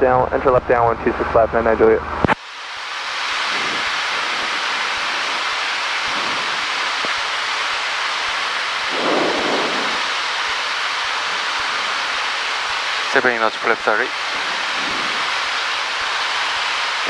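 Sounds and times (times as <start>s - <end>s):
aircraft cabin noise hiss: 0.0s - 17.0s.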